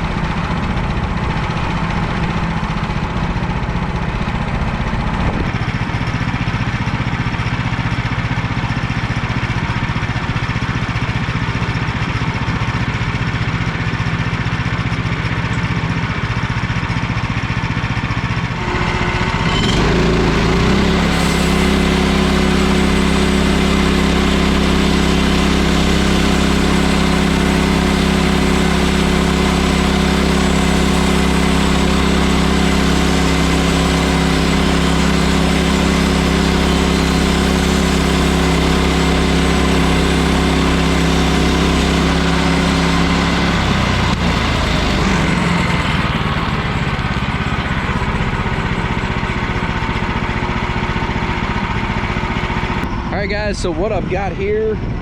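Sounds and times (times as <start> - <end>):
sawmill gas engine running: 0.0 - 55.0.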